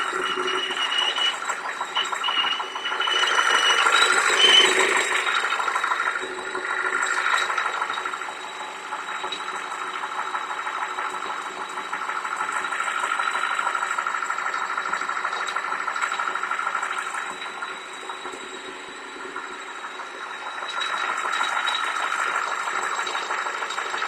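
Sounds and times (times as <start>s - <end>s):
high-pitched engine whistle: 0.0s - 8.4s.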